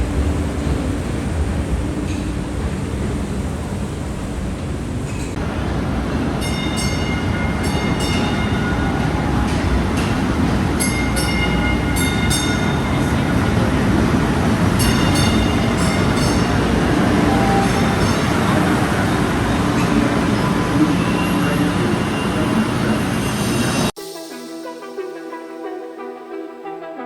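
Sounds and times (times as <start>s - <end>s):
subway train rumbling: 0.0s - 24.2s
wheels squealing on rails: 4.9s - 24.0s.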